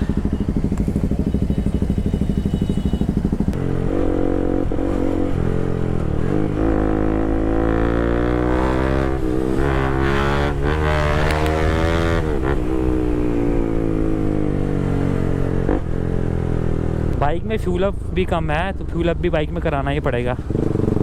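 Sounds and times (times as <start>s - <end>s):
motorcycle engine idling: 0.0s - 3.6s
motorcycle accelerating: 0.0s - 21.0s.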